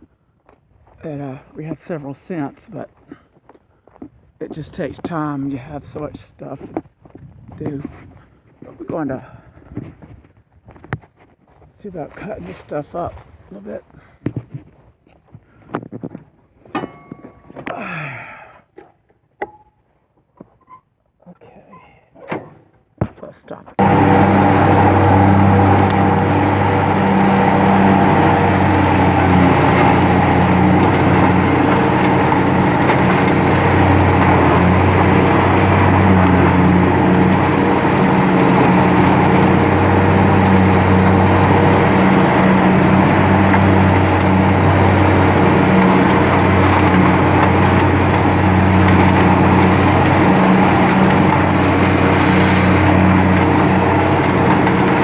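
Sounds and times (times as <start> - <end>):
engine running: 11.8 - 13.9, 23.8 - 55.0.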